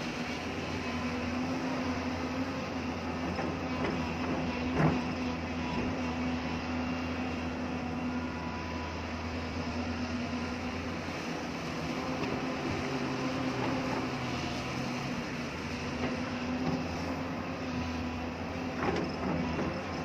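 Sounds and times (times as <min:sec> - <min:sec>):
excavator diesel engine droning: 0:00.0 - 0:20.0.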